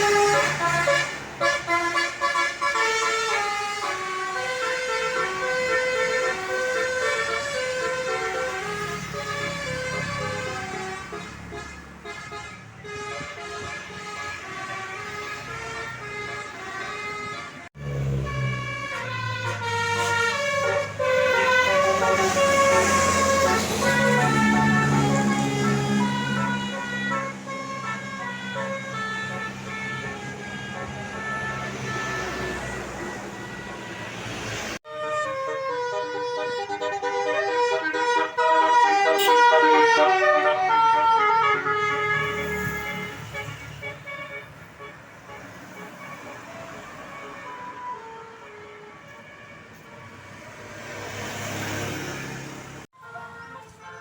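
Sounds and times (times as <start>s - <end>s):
bus horn playing a tune: 0.0s - 50.2s, 52.9s - 54.0s.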